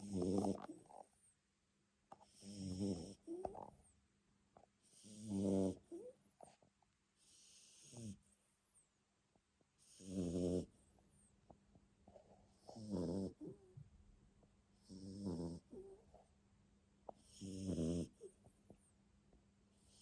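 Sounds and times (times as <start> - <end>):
dog snoring: 0.0 - 1.2, 2.2 - 3.8, 4.8 - 6.2, 7.2 - 8.8, 9.8 - 11.1, 12.5 - 13.8, 14.8 - 16.2, 17.1 - 18.8.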